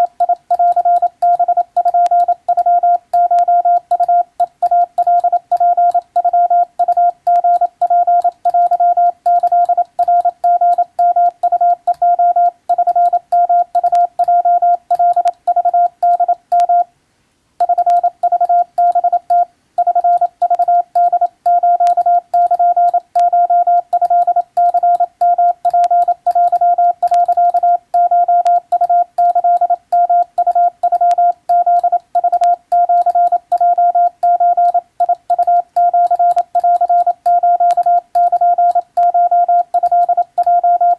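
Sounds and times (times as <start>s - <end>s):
morse code beeps: 0.0s - 16.9s, 17.6s - 40.9s
telegraph key clicks: 17.6s - 40.6s.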